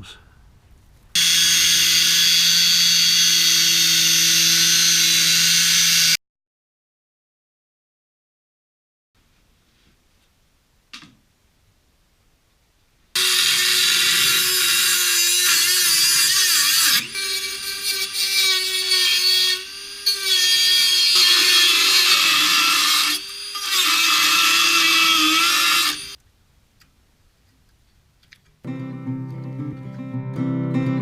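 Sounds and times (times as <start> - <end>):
power tool cutting steel: 1.2 - 6.2, 13.2 - 26.2.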